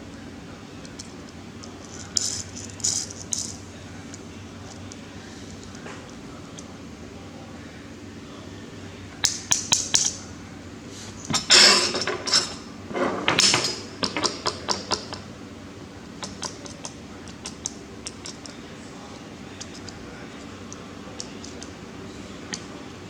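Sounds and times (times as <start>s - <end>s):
steady low hum: 0.0s - 23.0s
small hard parts clicking: 0.8s - 6.7s, 16.2s - 18.6s, 19.6s - 21.8s.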